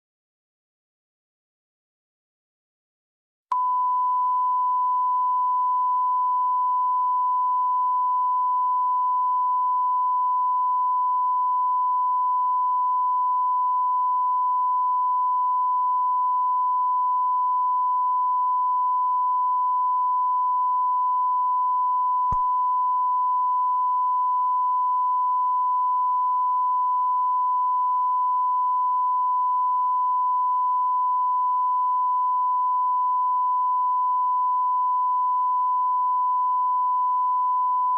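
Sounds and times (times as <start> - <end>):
steady test tone beep: 3.5 - 37.9.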